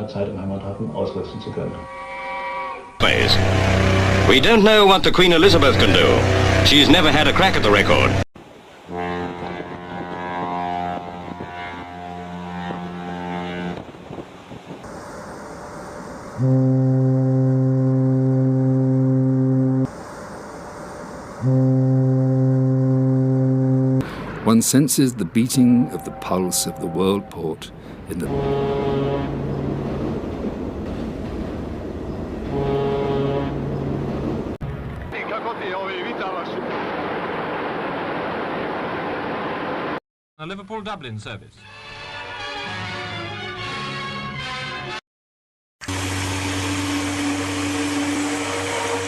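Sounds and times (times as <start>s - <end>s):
deep ship's horn blasts: 1.8s - 4.6s, 5.5s - 8.2s, 8.9s - 14.3s, 16.4s - 20.0s, 21.4s - 24.2s, 28.1s - 30.3s, 32.4s - 34.6s, 45.8s - 49.0s
constant rumbling background: 3.0s - 8.2s, 9.1s - 40.0s.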